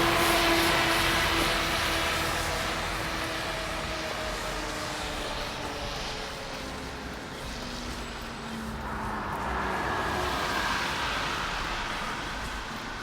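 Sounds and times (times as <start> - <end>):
vehicle passing with tyre noise: 0.0 - 13.0.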